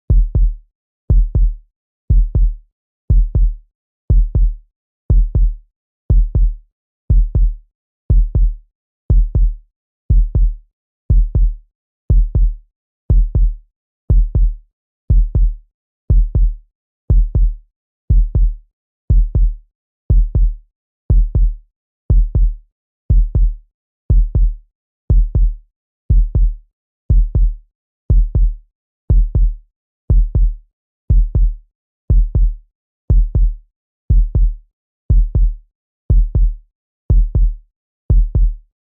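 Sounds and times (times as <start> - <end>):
heartbeat thumps: 30.1 - 30.5, 31.1 - 31.5, 32.1 - 32.5, 33.1 - 33.5, 34.1 - 34.5, 35.1 - 38.6.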